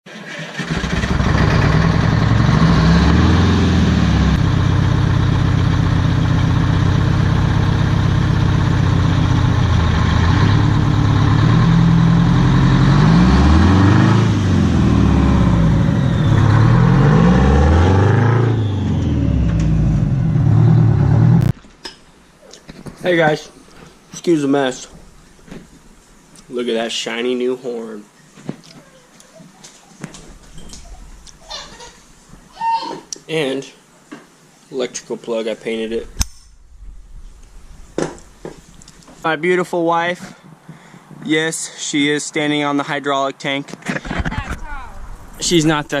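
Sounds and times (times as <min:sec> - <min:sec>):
diesel engine running and revving: 0:00.8 - 0:21.5.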